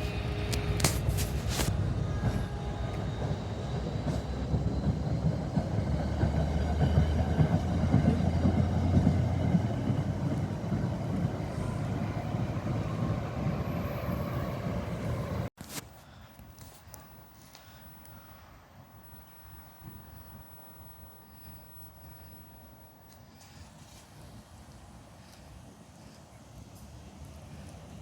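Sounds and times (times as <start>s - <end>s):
train passing rumble: 0.0s - 15.5s, 18.0s - 28.0s.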